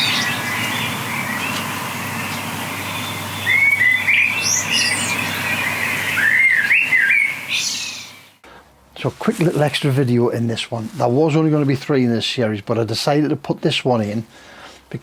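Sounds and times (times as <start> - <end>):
small birds chirping: 0.0 - 8.4
steady background hiss: 0.0 - 15.0.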